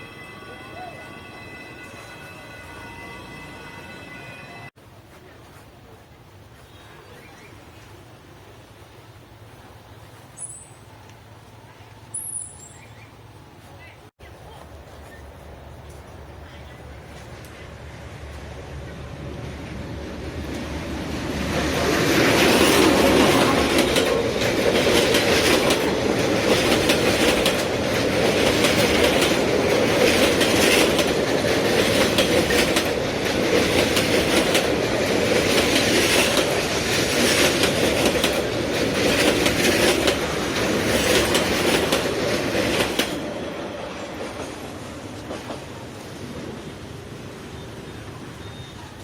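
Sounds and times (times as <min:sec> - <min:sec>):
train rumbling past: 0:00.0 - 0:49.0
wheels clacking over rail joints: 0:20.2 - 0:46.6.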